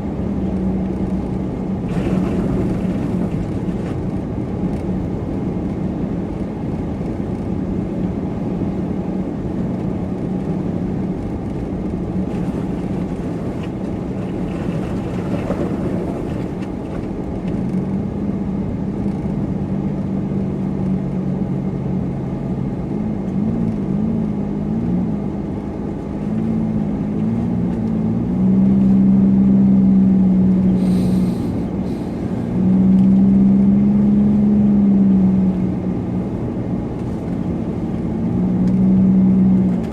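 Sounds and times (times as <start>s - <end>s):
car engine driving: 0.0s - 39.9s
road rumble: 0.0s - 39.9s.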